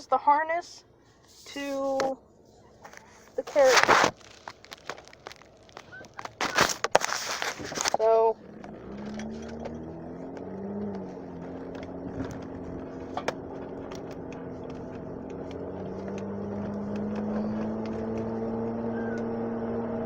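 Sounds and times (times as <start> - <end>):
car cabin engine and road noise: 0.0 - 20.0.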